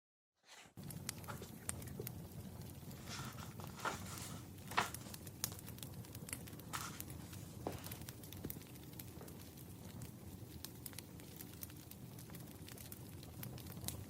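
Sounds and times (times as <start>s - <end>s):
wood fire crackling: 0.4s - 14.0s
low fire rumble: 0.5s - 14.0s.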